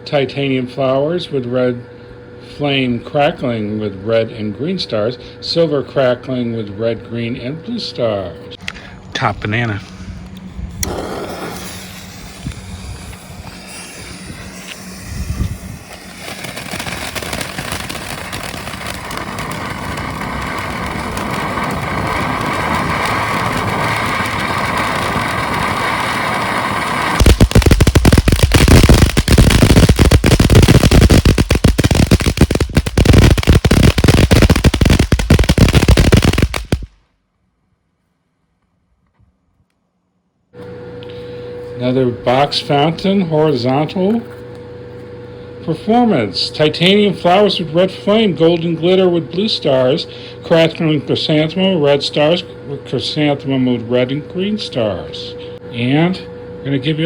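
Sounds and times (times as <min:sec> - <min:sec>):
firework fountain hissing: 0:10.7 - 0:37.0
loud firework crackling: 0:10.8 - 0:37.0.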